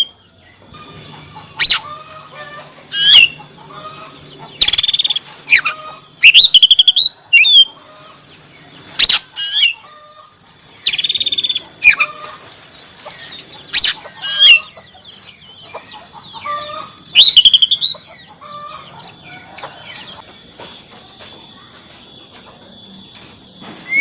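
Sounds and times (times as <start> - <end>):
bird singing harsh rattles: 0.0 - 22.3
bird whistling and warbling: 1.2 - 2.0, 2.9 - 3.4, 4.5 - 7.8, 8.9 - 9.8, 10.8 - 12.2, 13.2 - 14.7, 15.7 - 18.5.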